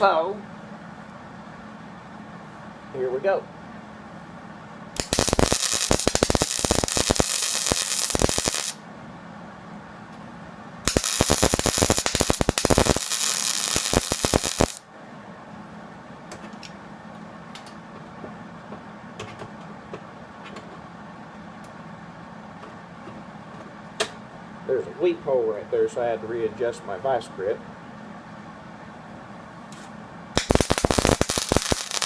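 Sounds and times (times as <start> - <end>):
welding arc crackling: 5.0 - 8.8, 10.8 - 14.8, 30.4 - 32.0.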